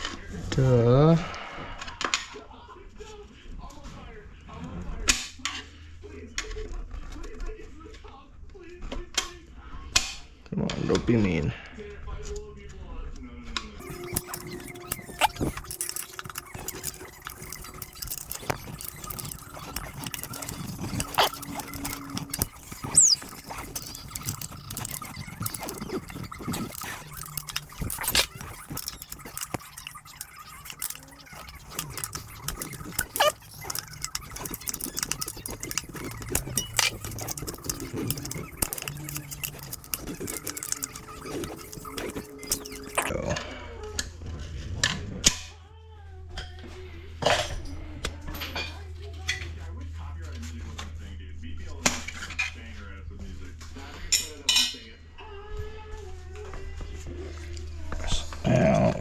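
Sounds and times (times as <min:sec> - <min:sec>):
metal tool clicks and scrapes: 0:13.8 - 0:43.1.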